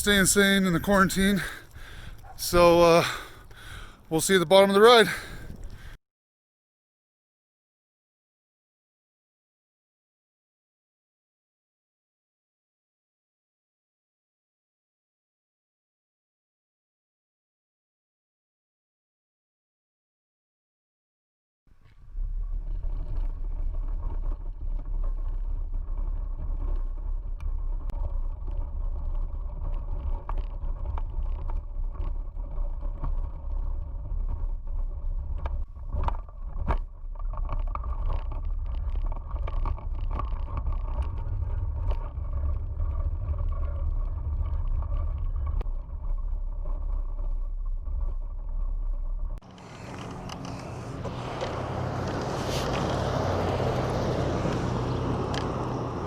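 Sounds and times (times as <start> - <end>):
board tyres rumbling on pavement: 0.0 - 6.0, 21.7 - 56.0
small clicks and knocks: 35.2 - 42.6
broad rushing hiss: 49.6 - 53.5.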